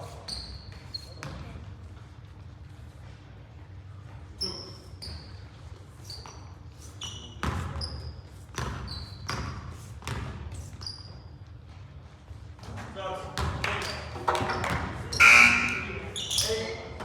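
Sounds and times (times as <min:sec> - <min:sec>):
sneakers squeaking: 0:00.0 - 0:01.7, 0:04.3 - 0:12.7, 0:13.4 - 0:17.0
basketball bouncing on floor: 0:01.2 - 0:01.6, 0:07.4 - 0:07.9, 0:08.5 - 0:10.6, 0:13.4 - 0:15.0.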